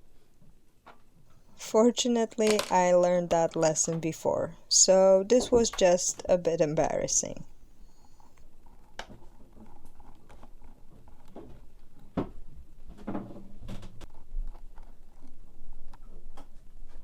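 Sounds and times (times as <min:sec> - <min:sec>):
plastic parts clicking and tapping: 0:02.2 - 0:04.1.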